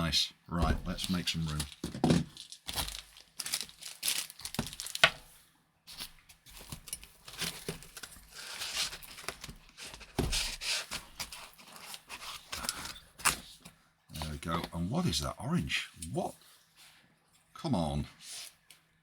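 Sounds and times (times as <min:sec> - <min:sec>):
heavy knock: 0:00.6 - 0:01.1
plastic wrapping crinkling: 0:00.8 - 0:14.3.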